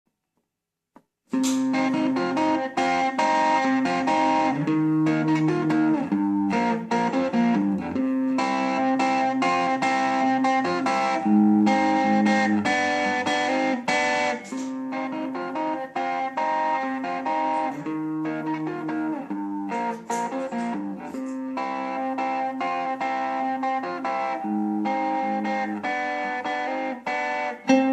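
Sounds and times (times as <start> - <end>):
guitar plucked notes and chords: 1.3 - 27.9.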